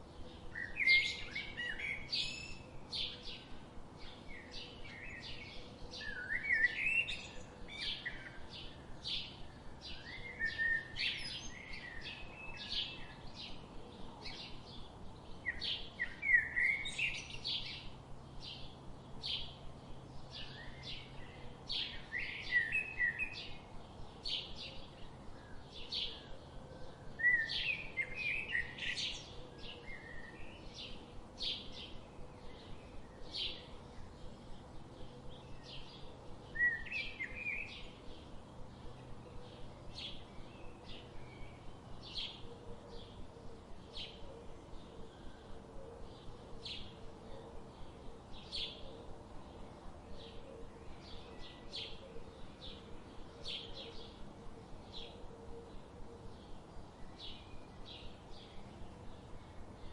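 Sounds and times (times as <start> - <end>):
bird warbling song: 0.0 - 59.9
songbirds chirping: 0.0 - 59.9.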